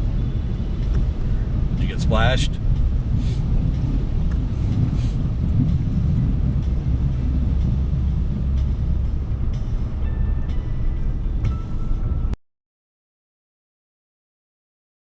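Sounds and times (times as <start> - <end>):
water against vehicle: 0.0 - 12.0
truck engine rumble: 0.0 - 12.4.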